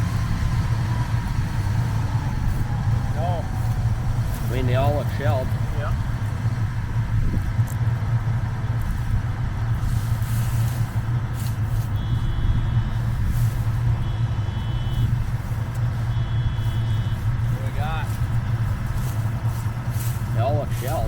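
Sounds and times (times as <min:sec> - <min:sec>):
combine harvester running: 0:00.0 - 0:21.0.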